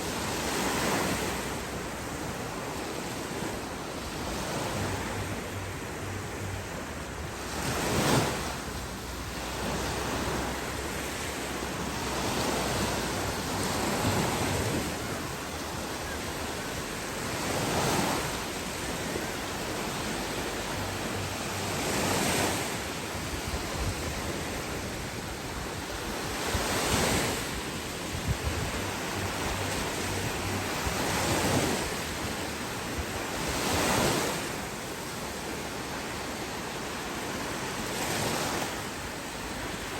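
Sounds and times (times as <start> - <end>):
ocean waves breaking: 0.0 - 39.9
wind on microphone: 20.7 - 34.7.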